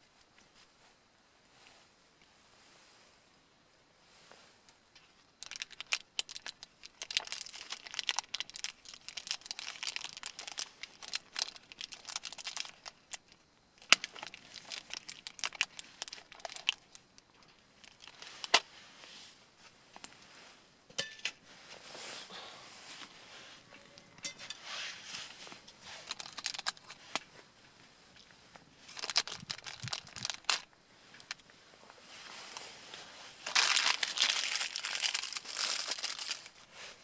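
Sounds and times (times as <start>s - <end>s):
plastic packaging crinkling and tearing: 5.4s - 18.7s, 25.8s - 27.3s, 28.8s - 31.4s, 33.4s - 36.6s.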